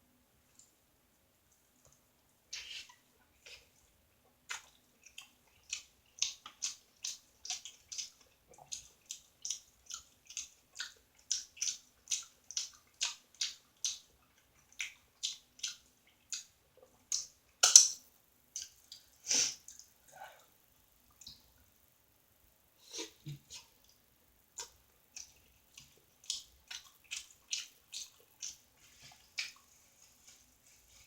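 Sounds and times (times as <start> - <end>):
person chewing with mouth open: 4.5 - 17.9, 24.6 - 30.4.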